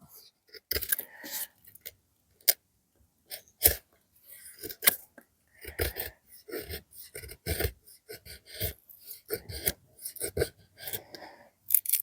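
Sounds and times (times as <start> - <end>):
knife cutting hard wood: 5.6 - 11.0.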